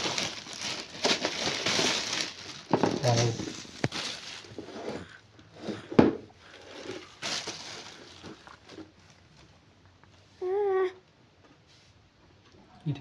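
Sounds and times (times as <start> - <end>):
packaging rustling: 0.0 - 5.8, 6.4 - 9.5.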